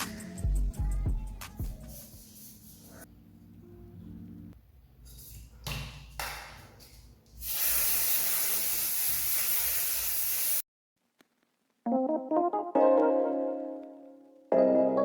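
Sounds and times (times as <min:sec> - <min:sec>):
aerosol spray can hissing: 0:07.4 - 0:10.6.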